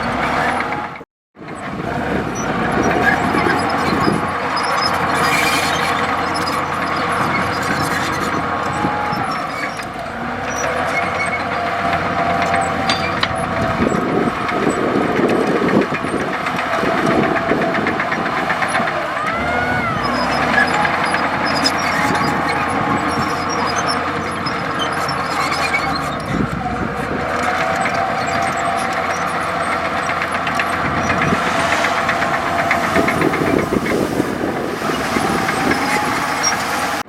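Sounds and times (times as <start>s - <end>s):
bulldozer diesel engine running: 0.0s - 37.0s
noisy clatter: 0.0s - 37.0s
rising and falling whine: 30.0s - 36.1s.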